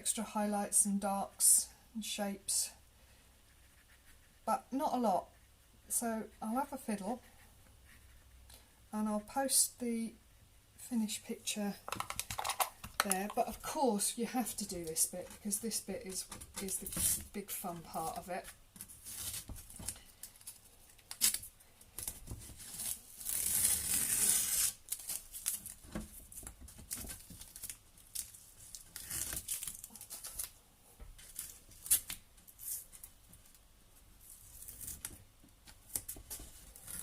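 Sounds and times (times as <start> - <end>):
masking tape being peeled: 18.8 - 30.6, 31.2 - 33.6, 34.2 - 37.0.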